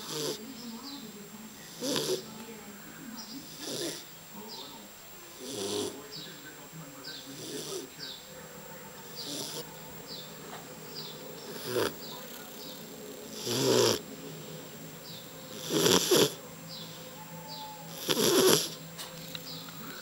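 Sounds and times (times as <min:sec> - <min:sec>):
dog snoring: 0:00.0 - 0:00.5, 0:01.6 - 0:02.4, 0:03.4 - 0:04.1, 0:05.4 - 0:06.3, 0:07.1 - 0:20.0.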